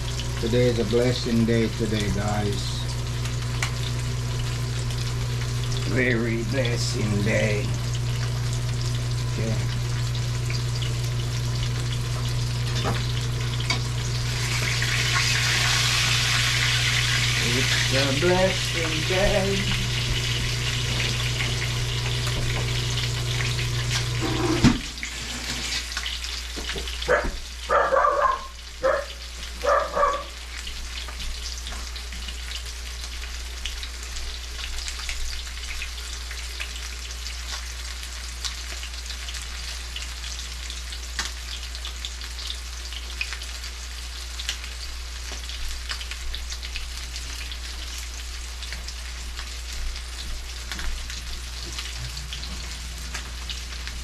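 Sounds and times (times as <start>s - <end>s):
steady hum: 0.0s - 25.4s, 50.1s - 54.0s
food sizzling in hot oil: 0.0s - 54.0s.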